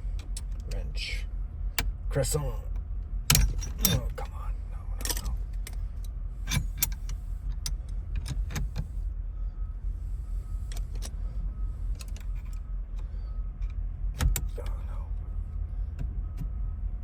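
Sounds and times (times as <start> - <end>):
steady low hum: 0.0 - 17.0
metal clicks of hand tools: 3.3 - 4.2.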